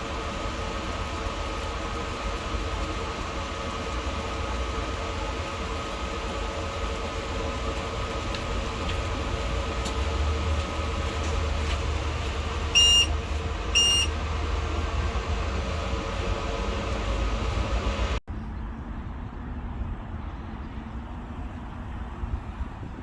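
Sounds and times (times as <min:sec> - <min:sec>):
steady low rumble: 0:00.0 - 0:20.0
constant hum: 0:00.0 - 0:23.0
short high electronic beeps: 0:12.8 - 0:13.1, 0:13.8 - 0:14.1.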